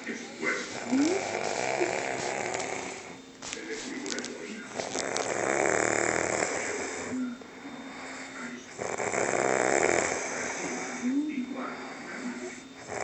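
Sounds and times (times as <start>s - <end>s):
quiet breathing: 0.0s - 13.0s
man snoring: 0.7s - 3.2s, 4.8s - 7.2s, 8.8s - 11.0s, 12.3s - 13.0s.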